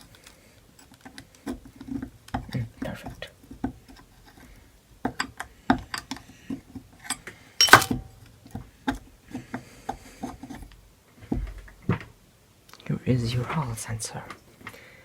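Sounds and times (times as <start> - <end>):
small metal parts clicking and tapping: 0.0 - 2.7, 3.5 - 8.0
metal parts scraping: 7.1 - 8.0.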